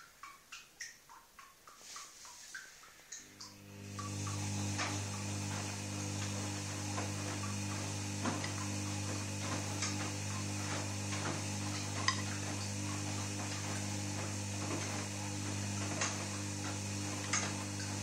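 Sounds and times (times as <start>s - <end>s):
washing machine hum: 0.0s - 18.0s
clicks and taps inside drum: 7.0s - 12.7s.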